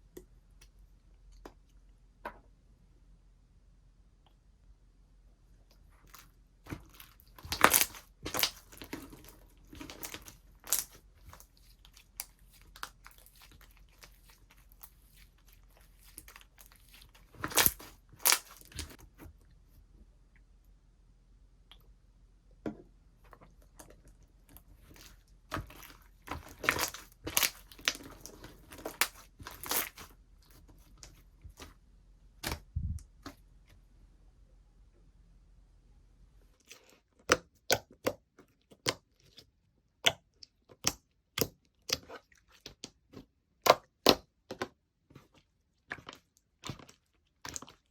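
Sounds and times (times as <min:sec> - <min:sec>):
slime crackling and popping: 0:06.1 - 0:19.0, 0:24.5 - 0:31.7.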